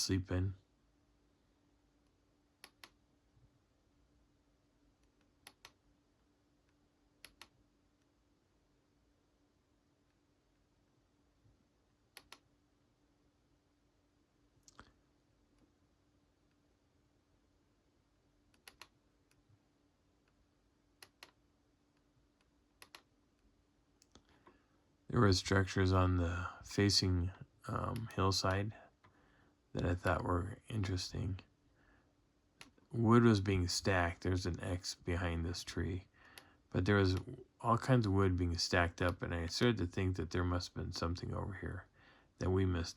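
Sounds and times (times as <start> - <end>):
faint steady hum: 0.0 - 42.9
computer mouse clicking: 2.6 - 3.0, 5.0 - 5.8, 6.7 - 7.6, 12.1 - 12.5, 18.5 - 19.4, 21.0 - 21.4, 22.0 - 23.1.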